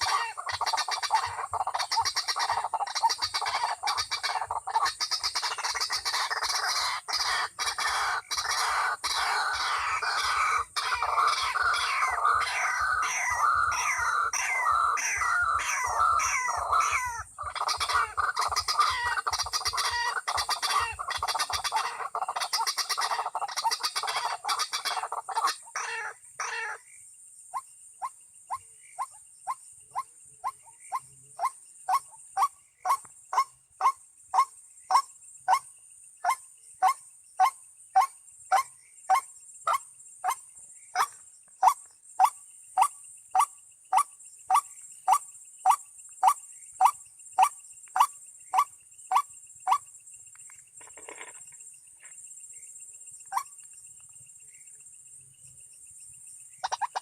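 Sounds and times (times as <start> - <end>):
waterhen croaking calls: 0.0 - 26.8, 56.6 - 57.0.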